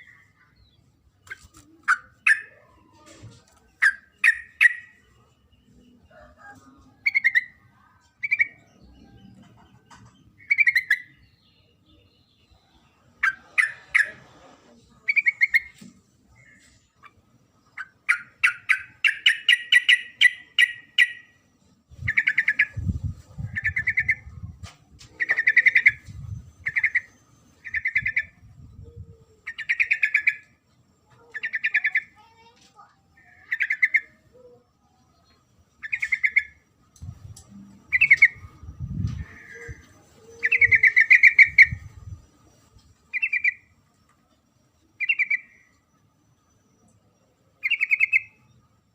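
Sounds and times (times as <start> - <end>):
bird chattering calls: 1.2 - 2.8, 3.7 - 5.0, 10.4 - 11.2, 13.2 - 14.2, 16.4 - 21.4, 22.0 - 24.3, 25.2 - 28.4, 29.4 - 30.5, 31.2 - 32.3, 33.2 - 34.4, 35.8 - 36.6, 37.9 - 41.9.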